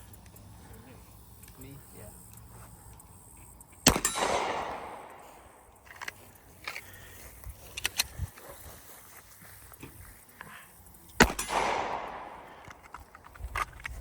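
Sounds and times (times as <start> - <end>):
pistol shot with long echo: 3.8 - 5.8, 11.2 - 12.9.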